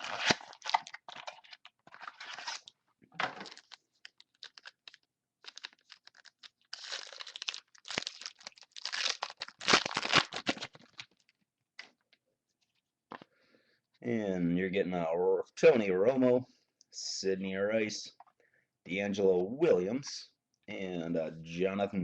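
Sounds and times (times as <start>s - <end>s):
foil wrapper tearing and crinkling: 0.0s - 2.7s, 3.4s - 11.3s.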